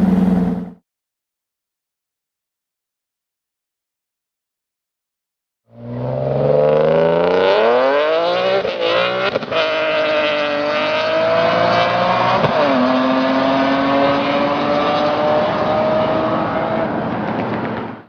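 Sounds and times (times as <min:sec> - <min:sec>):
sports car engine accelerating: 0:00.0 - 0:00.8, 0:05.7 - 0:17.8.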